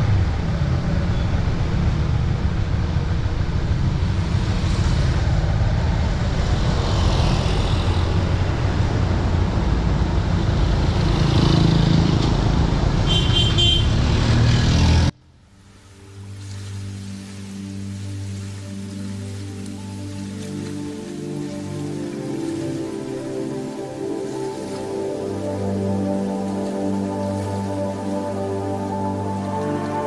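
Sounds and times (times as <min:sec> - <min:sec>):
passing traffic: 0:00.0 - 0:30.0
road and wind noise: 0:00.0 - 0:30.0
vehicle horn toot: 0:13.0 - 0:14.0.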